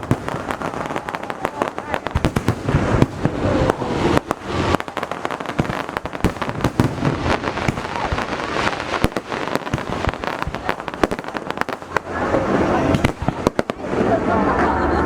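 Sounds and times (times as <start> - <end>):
fireworks bangs: 0.0 - 15.0
fireworks crackle: 0.0 - 15.0.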